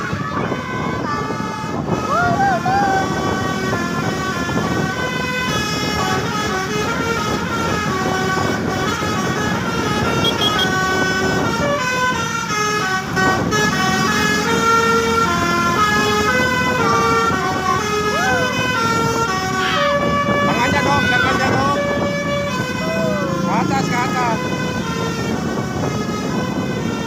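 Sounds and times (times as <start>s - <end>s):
bus horn playing melody: 2.8s - 27.0s.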